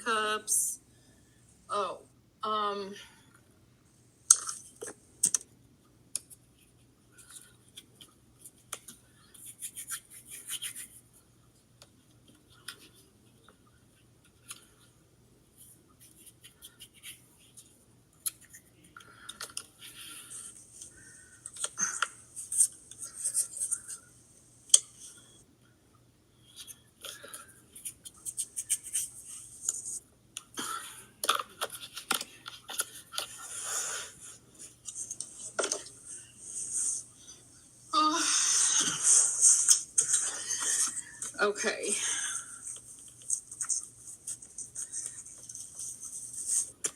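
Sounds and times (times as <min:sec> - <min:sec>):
scratchy rubbing and scraping: 0:09.3 - 0:11.1, 0:15.6 - 0:17.7, 0:22.4 - 0:24.1, 0:26.6 - 0:30.0, 0:31.6 - 0:37.1, 0:38.7 - 0:41.1, 0:42.6 - 0:46.9.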